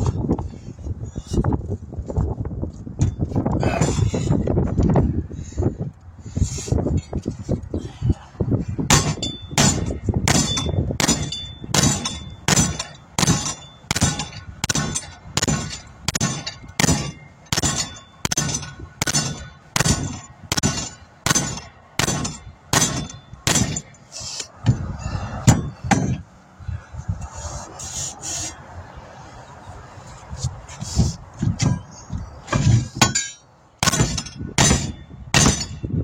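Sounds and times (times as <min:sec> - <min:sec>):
hammer clanging on metal rim: 0:08.9 - 0:23.9.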